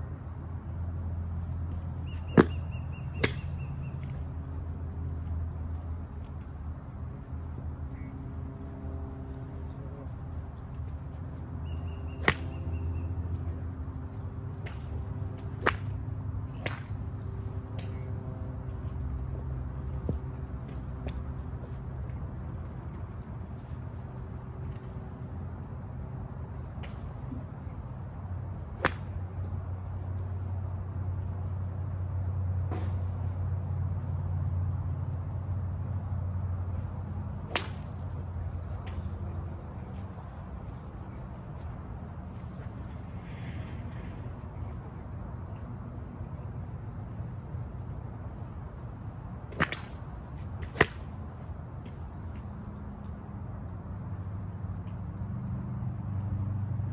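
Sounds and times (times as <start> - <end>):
steady low hum: 0.0 - 56.9
golf clubs striking balls: 1.7 - 3.5, 12.2 - 13.2, 14.6 - 18.1, 28.8 - 29.2, 37.5 - 38.2, 49.5 - 51.2
golf club striking ball: 12.2 - 12.7, 16.6 - 17.0, 28.8 - 29.0, 37.5 - 38.0, 49.5 - 50.0, 50.6 - 51.1.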